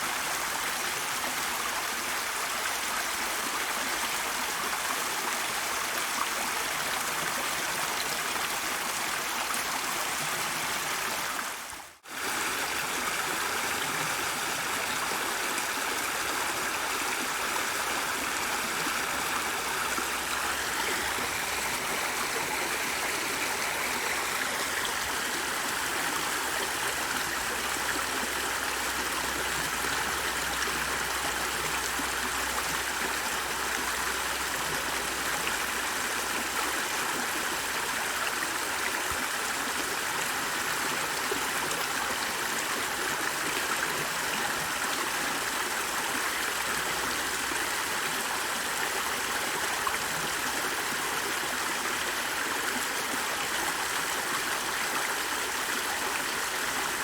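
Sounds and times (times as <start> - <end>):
stream water flowing: 0.0 - 57.0.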